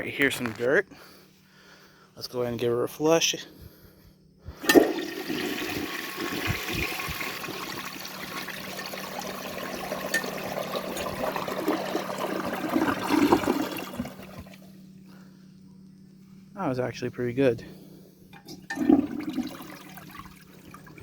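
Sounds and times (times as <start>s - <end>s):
toilet flushing: 4.6s - 14.7s, 18.4s - 21.0s.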